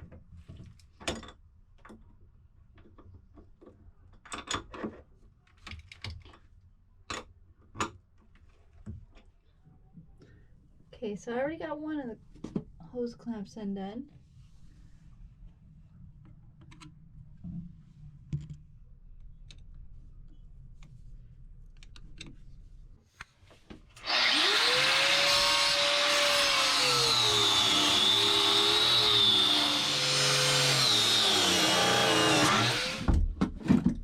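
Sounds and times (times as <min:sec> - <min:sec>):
power drill running: 0:24.0 - 0:33.1.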